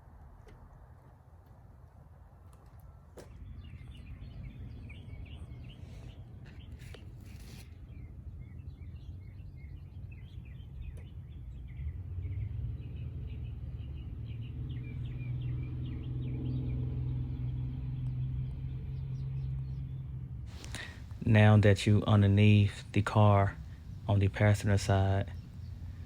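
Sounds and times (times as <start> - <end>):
small birds chirping: 3.2 - 26.0
low steady hum: 18.8 - 26.0.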